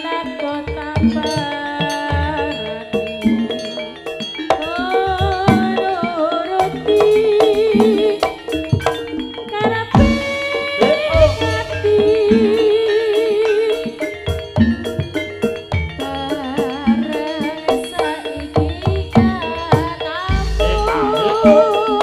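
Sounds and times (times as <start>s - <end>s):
wavering melody line: 0.0s - 22.0s
sharp drum strokes: 10.0s - 12.8s, 20.3s - 22.0s.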